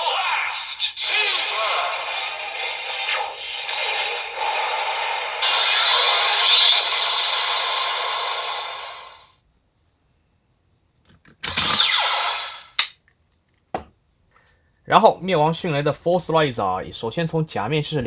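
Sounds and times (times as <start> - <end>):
toy electronic sound effects: 11.5 - 12.8.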